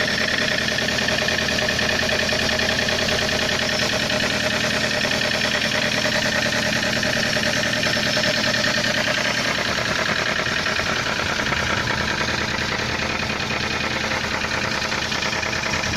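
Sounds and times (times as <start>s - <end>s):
engine idling with clatter: 0.0s - 15.9s.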